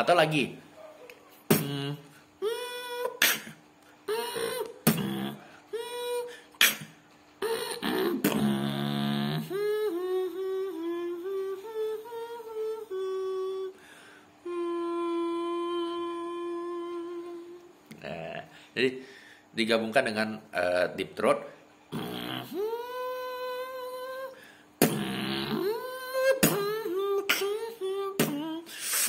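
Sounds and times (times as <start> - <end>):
rough deep-throat sound: 1.5 - 2.0, 4.4 - 5.5, 7.7 - 9.6, 24.8 - 25.8
beatboxing: 1.5 - 12.0, 21.9 - 29.0
hummed melody: 7.4 - 13.8, 14.4 - 17.8, 22.2 - 28.7.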